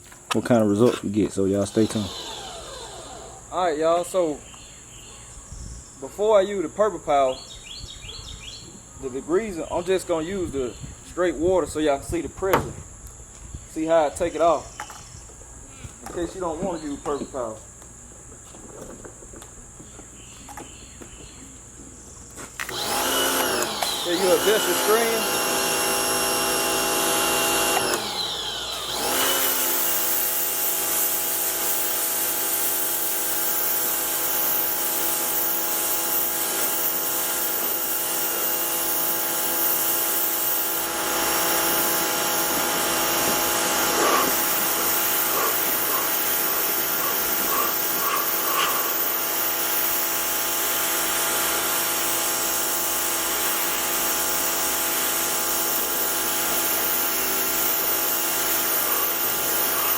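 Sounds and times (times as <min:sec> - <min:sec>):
pressure washer motor whine: 0:01.5 - 0:04.2, 0:22.6 - 0:59.9
water spray hissing: 0:22.7 - 0:52.8, 0:55.4 - 0:59.9.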